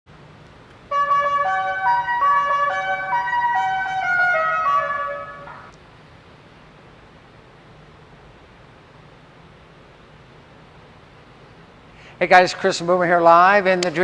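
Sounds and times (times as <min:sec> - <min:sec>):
horn-like electronic tune: 0:00.9 - 0:05.7.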